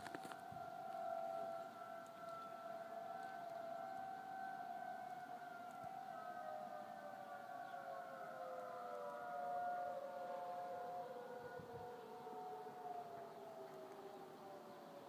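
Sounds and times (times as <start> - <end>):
two-tone warning siren wail: 0.0 - 15.0.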